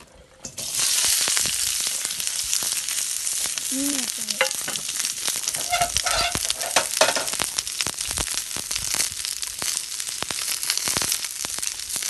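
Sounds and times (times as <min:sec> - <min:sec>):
food sizzling in a pan: 0:00.4 - 0:12.0
sharp crackles: 0:00.6 - 0:12.0.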